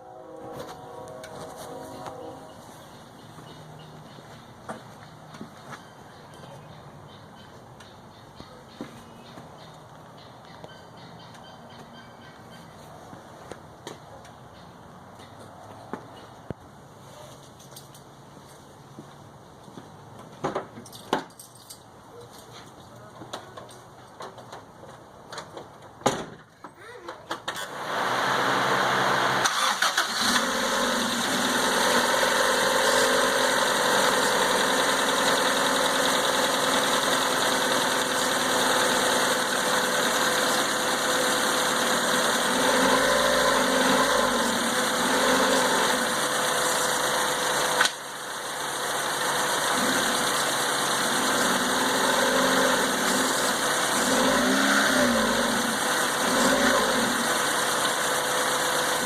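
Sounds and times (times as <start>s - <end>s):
car engine idling: 27.8s - 54.4s.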